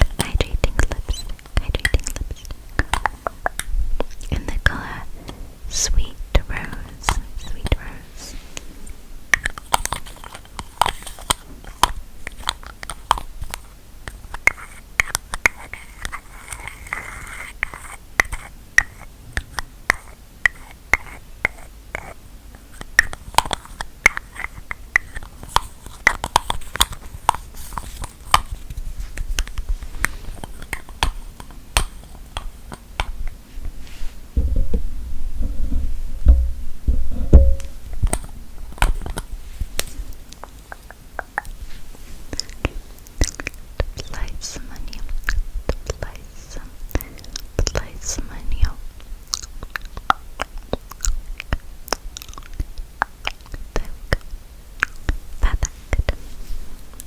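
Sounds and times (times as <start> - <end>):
tapping and scratching on objects: 0.0 - 4.6, 9.3 - 33.4, 34.4 - 41.6
low thumps and rumbling: 34.3 - 38.2.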